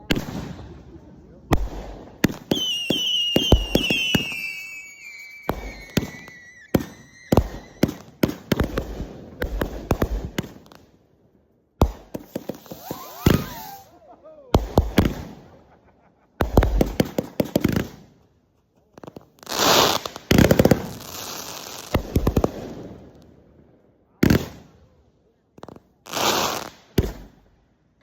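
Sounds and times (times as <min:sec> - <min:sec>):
firework bangs: 0:00.0 - 0:10.8, 0:11.8 - 0:13.9, 0:14.5 - 0:15.8, 0:16.4 - 0:18.1, 0:19.5 - 0:23.2, 0:24.2 - 0:24.7, 0:25.6 - 0:27.4
whistling firework falling whistle: 0:02.4 - 0:08.1, 0:12.6 - 0:13.9.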